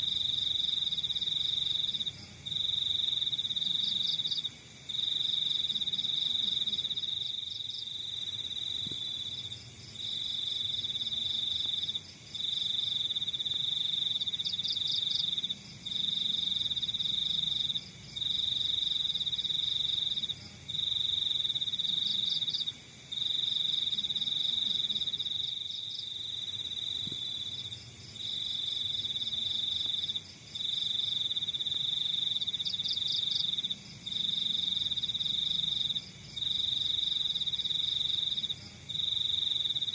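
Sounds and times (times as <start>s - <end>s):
crickets trilling: 0.0s - 39.9s.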